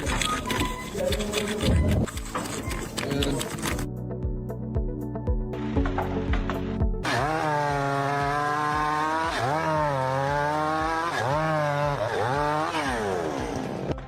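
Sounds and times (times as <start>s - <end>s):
small engine running at high speed: 7.0s - 14.0s.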